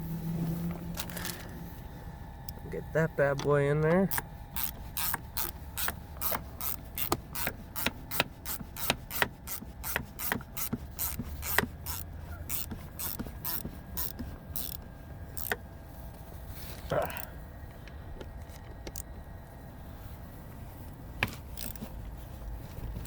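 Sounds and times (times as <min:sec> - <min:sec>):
hand ratchet clicking: 0:04.1 - 0:15.6, 0:21.4 - 0:21.9.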